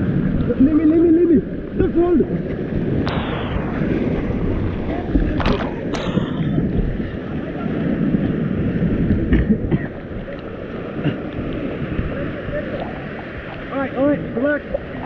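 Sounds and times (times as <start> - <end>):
muffled whitewater rushing: 0.0 - 15.0
sharp splashes: 1.4 - 7.0.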